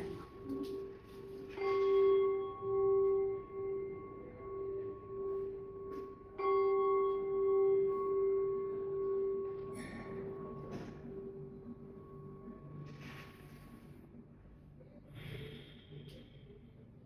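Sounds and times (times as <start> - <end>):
singing bowl ringing: 0.0 - 13.0.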